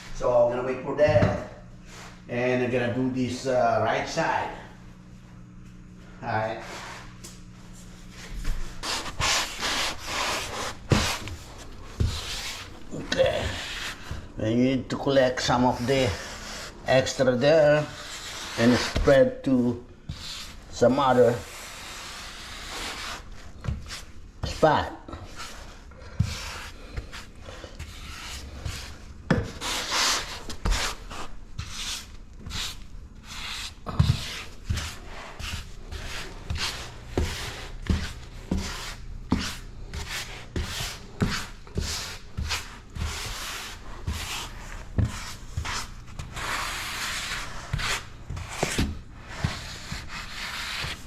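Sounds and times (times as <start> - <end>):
grout scraped across tile: 17.8 - 19.1, 21.2 - 23.3, 25.3 - 51.0.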